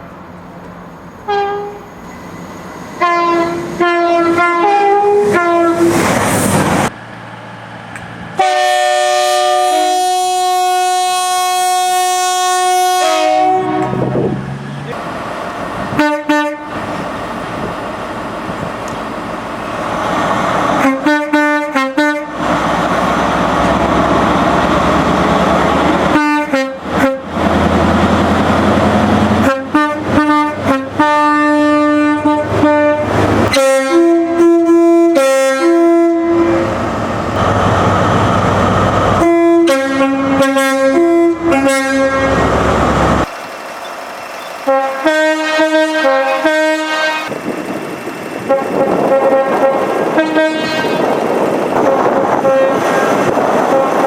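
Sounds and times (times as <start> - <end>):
rumble of passing trains: 0.0 - 54.0
locomotive horn blasts: 1.2 - 1.8, 3.0 - 5.9, 8.4 - 14.1, 15.9 - 16.8, 20.8 - 22.4, 26.1 - 27.3, 29.4 - 36.8, 39.2 - 42.5, 44.6 - 47.3, 48.5 - 51.2, 51.8 - 54.0.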